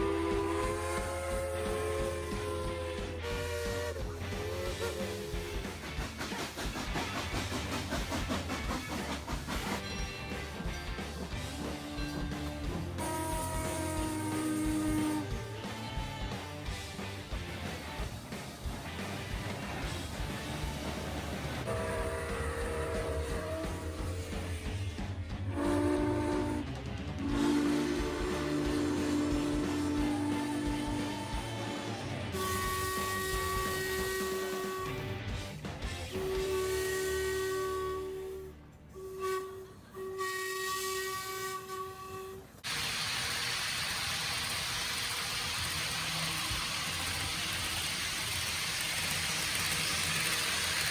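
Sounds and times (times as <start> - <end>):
model locomotive horn chord: 0.0 - 5.9, 11.5 - 17.4, 21.6 - 35.4, 36.0 - 42.8, 43.5 - 50.9
loud steady hiss: 42.6 - 50.9.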